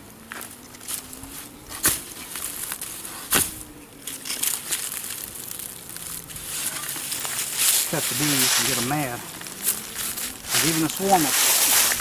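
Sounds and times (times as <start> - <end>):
dirt and roots crunching: 0.0 - 12.0
shovel striking soil: 1.8 - 2.0, 3.3 - 3.6.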